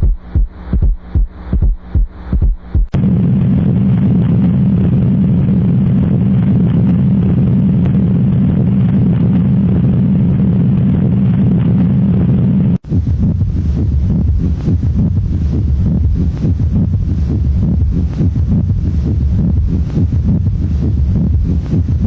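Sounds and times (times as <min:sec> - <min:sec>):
heartbeat thumps: 0:00.0 - 0:03.0, 0:12.8 - 0:22.0
loud low rumble: 0:02.8 - 0:22.0.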